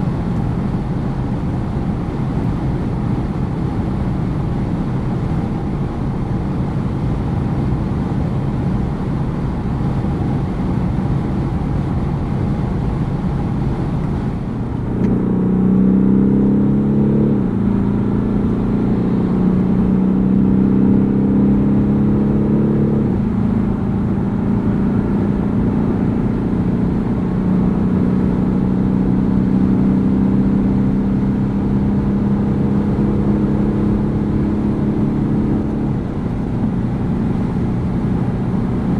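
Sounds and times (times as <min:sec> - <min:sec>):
car engine accelerating: 0:00.0 - 0:38.9
road and wind noise: 0:00.0 - 0:38.9.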